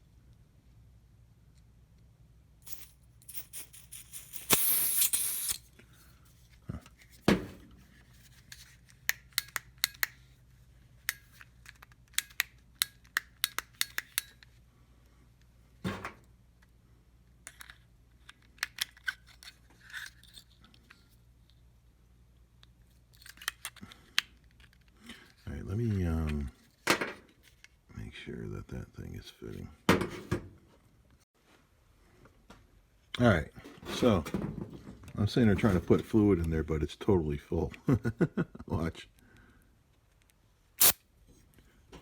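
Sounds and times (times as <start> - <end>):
gas hissing out: 2.7 - 5.7
knock and thump: 7.3 - 7.7.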